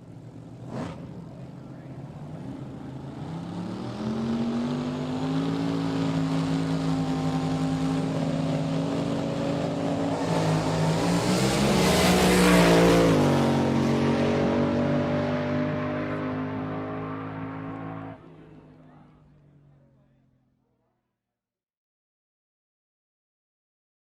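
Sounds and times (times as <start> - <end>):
car passing by: 10.2 - 18.5.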